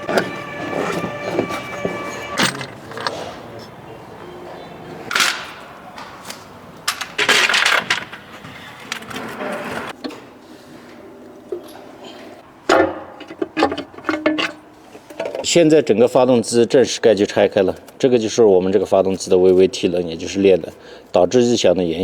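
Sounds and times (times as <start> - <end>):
metal tools clicking and clanking: 0.0 - 3.7, 6.9 - 8.3, 12.7 - 15.5.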